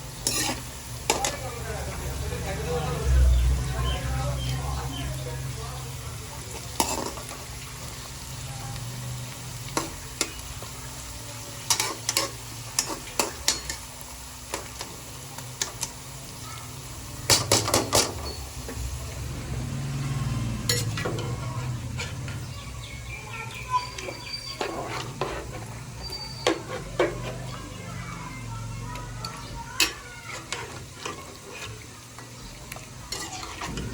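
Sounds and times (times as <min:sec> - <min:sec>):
food sizzling in a pan: 0:00.0 - 0:33.9
metal utensil clinking on pan: 0:00.2 - 0:01.5, 0:06.6 - 0:07.4, 0:11.7 - 0:13.9, 0:17.3 - 0:18.6, 0:20.7 - 0:22.5, 0:24.0 - 0:27.5, 0:29.2 - 0:31.7, 0:33.1 - 0:33.9.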